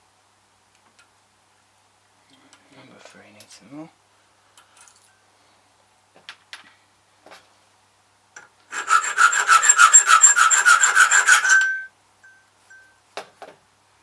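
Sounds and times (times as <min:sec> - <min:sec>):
file rasping on metal key: 0:08.7 - 0:11.9.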